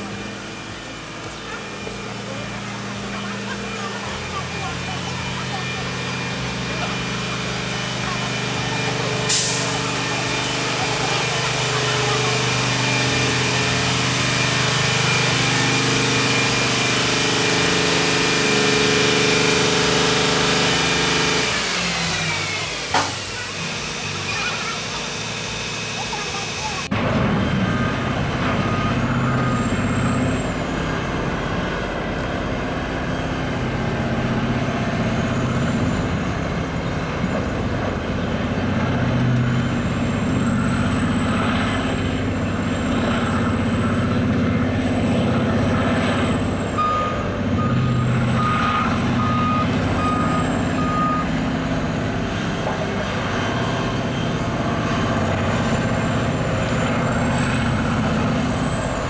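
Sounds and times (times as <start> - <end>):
diesel engine with high whine: 0.0 - 59.0
reversing alarm beeping: 0.1 - 26.9, 45.0 - 51.9.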